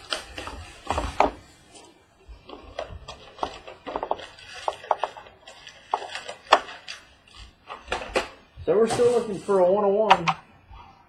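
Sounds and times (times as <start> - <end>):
packaging crinkling: 0.0 - 8.4.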